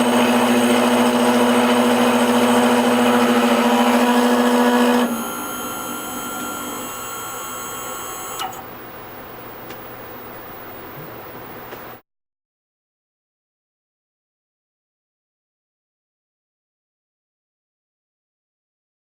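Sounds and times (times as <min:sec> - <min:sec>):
faint hum: 0:00.0 - 0:12.0
machine motor humming: 0:00.0 - 0:12.0
click: 0:08.4 - 0:08.6.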